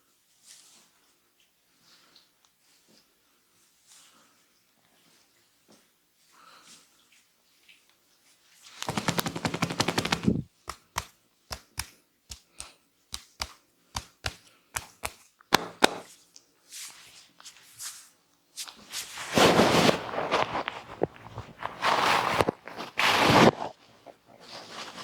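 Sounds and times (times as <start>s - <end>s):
soft rustle: 0.0s - 10.5s, 16.1s - 25.0s
hands slapping in head massage: 8.7s - 16.2s.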